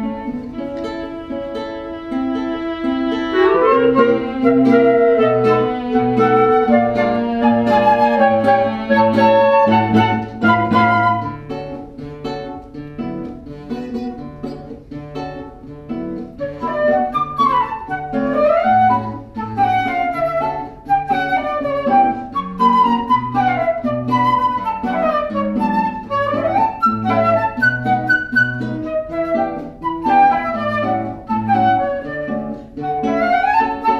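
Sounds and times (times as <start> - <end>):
melodic line with bending notes: 0.0 - 11.9.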